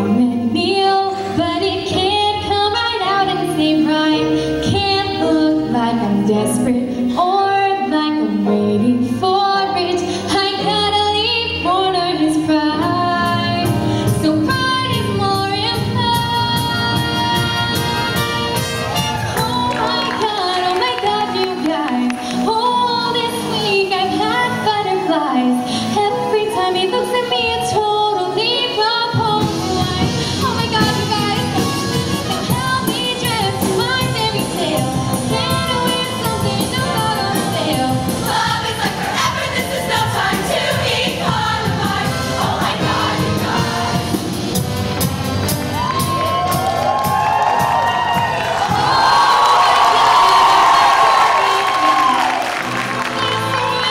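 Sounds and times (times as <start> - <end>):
instrumental accompaniment: 0.0 - 53.9
choir singing: 37.4 - 44.6.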